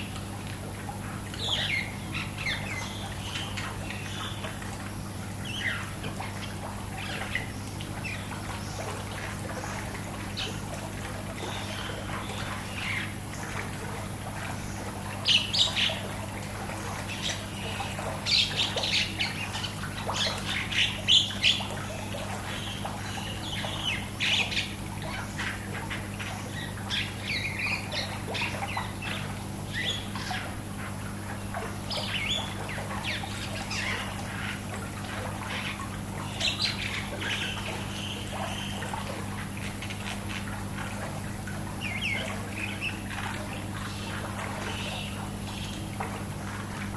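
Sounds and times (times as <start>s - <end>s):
pool water: 0.0s - 46.9s
steady low hum: 0.0s - 46.9s
birds chirping and calling: 0.9s - 46.8s.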